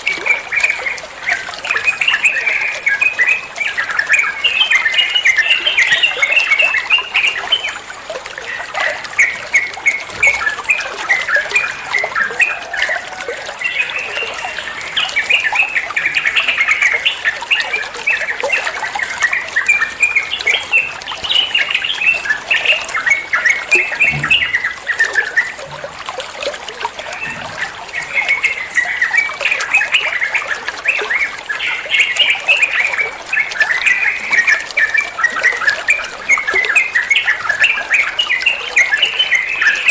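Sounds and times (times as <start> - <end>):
bird singing rapid chattering song: 13.7 - 25.6.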